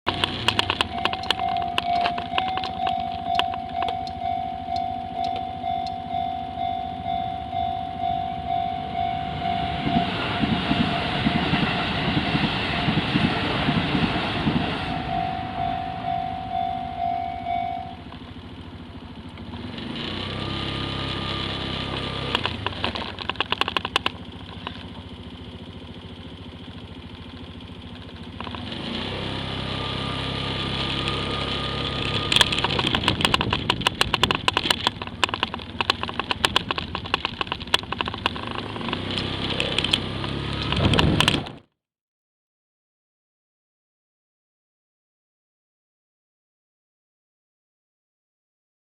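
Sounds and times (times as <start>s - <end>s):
level-crossing warning bell: 0.1s - 18.5s
electric train passing: 0.1s - 22.6s
road vehicles passing: 0.1s - 41.6s.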